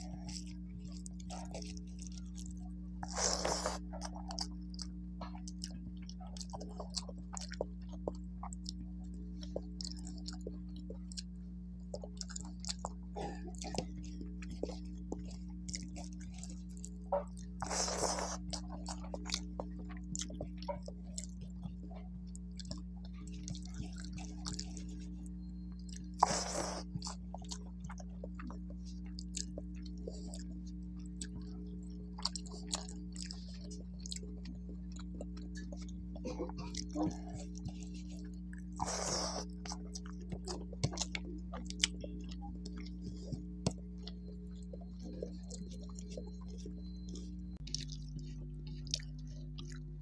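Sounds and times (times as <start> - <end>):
close chewing and mouth sounds: 0.0 - 50.0
low electrical hum: 0.0 - 50.0
food crunches: 0.3 - 11.3, 25.8 - 30.4, 32.2 - 50.0.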